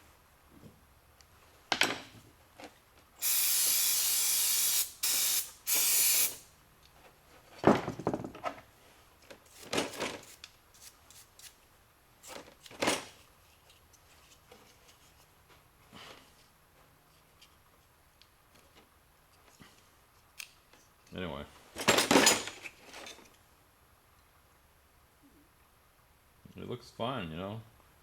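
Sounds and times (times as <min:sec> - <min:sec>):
pressurised spray hissing: 0:03.2 - 0:06.5
small parts knocking and clattering: 0:07.5 - 0:08.6.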